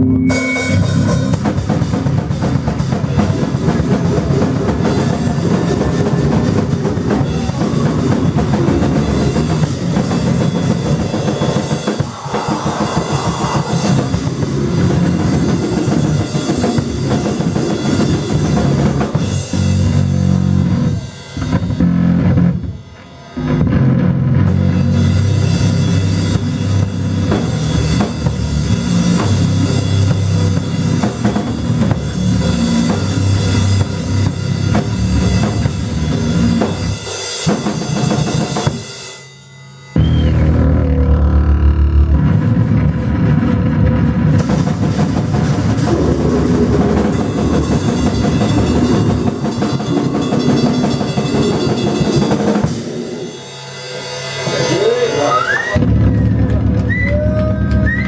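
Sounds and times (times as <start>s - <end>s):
live rock band playing loud: 0.1s - 22.7s, 44.4s - 56.9s
bass drum and snare beat: 23.5s - 38.8s.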